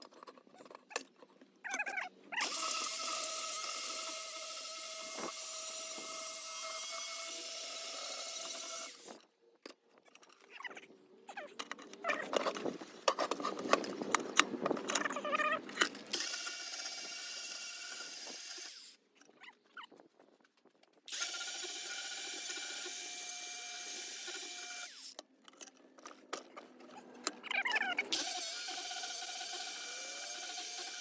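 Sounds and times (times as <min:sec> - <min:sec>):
tool motor whine: 0:02.4 - 0:09.2, 0:16.1 - 0:19.0, 0:21.1 - 0:25.2, 0:28.1 - 0:31.0.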